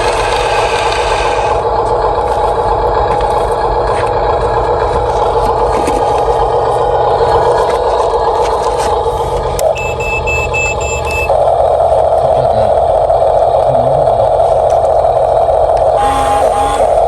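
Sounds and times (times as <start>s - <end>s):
toy electric motors whining: 0.0s - 11.3s, 15.8s - 17.0s
toy reversing beeper: 9.6s - 11.3s, 16.0s - 17.0s.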